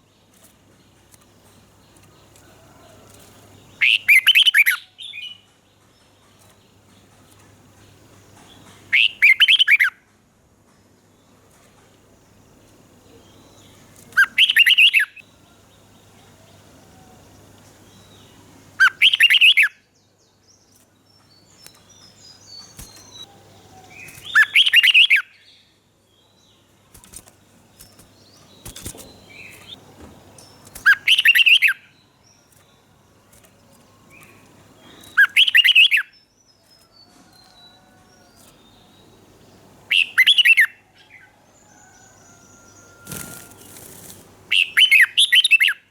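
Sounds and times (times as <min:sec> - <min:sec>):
bird singing warbling phrases: 0:03.7 - 0:05.4, 0:08.6 - 0:10.0, 0:13.0 - 0:20.0, 0:20.7 - 0:29.8, 0:30.4 - 0:32.8, 0:33.4 - 0:36.4, 0:39.8 - 0:41.3, 0:42.5 - 0:45.9
soft bird chirps: 0:11.2 - 0:45.9.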